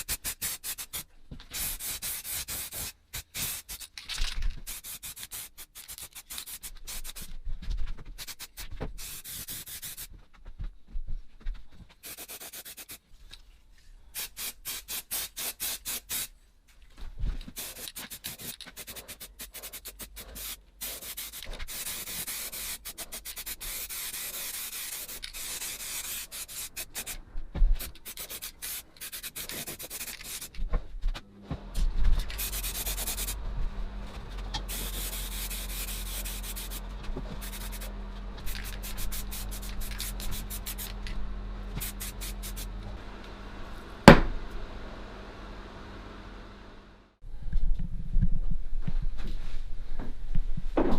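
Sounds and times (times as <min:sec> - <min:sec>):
hand sanding strokes: 0:12.0 - 0:13.0, 0:17.5 - 0:27.2, 0:27.8 - 0:30.6, 0:32.2 - 0:33.4, 0:34.2 - 0:41.0
low steady hum: 0:29.8 - 0:50.9.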